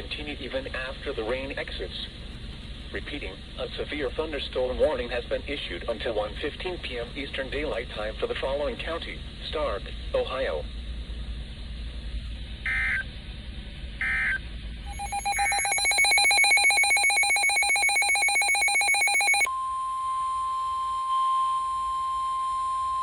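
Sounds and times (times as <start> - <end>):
pulsing electronic alarm: 12.6 - 13.1, 14.0 - 23.0
steady warning alert tone: 12.7 - 13.0, 14.0 - 19.5.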